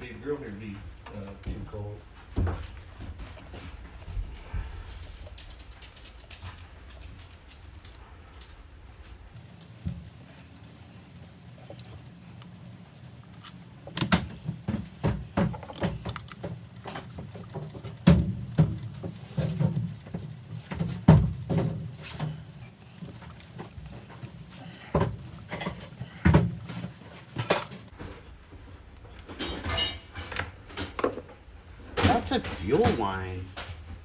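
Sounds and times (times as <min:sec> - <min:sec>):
metal tools clinking and rattling: 0:09.4 - 0:27.9, 0:29.1 - 0:31.0.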